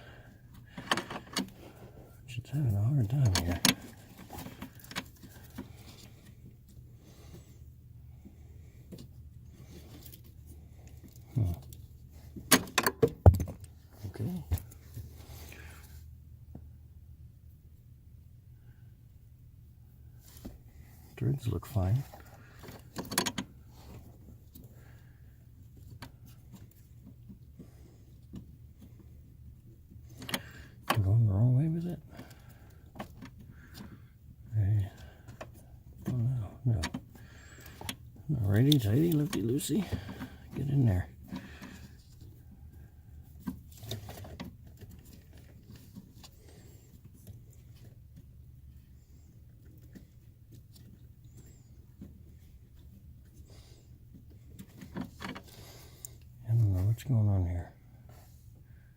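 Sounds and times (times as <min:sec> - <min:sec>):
low steady hum: 0:00.0 - 0:58.9
faint clicks and scrapes: 0:00.5 - 0:13.0, 0:36.8 - 0:58.8.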